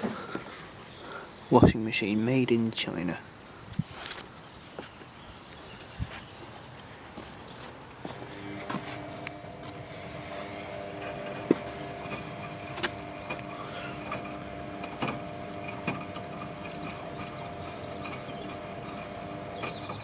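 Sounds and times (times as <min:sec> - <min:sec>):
washing machine motor hum: 0:08.0 - 0:20.0
sharp clicks and knocks: 0:08.6 - 0:20.0.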